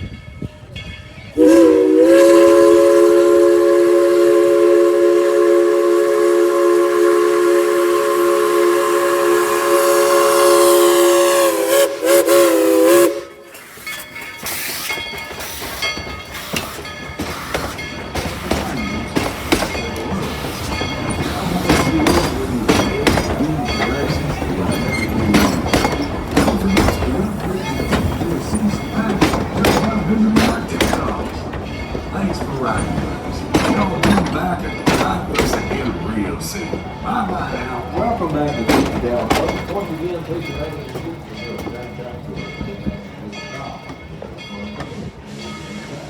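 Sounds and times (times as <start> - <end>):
rolling train noise: 0.0 - 46.0
steam locomotive whistle: 1.4 - 13.8
locomotive exhaust chuffs: 1.4 - 42.4.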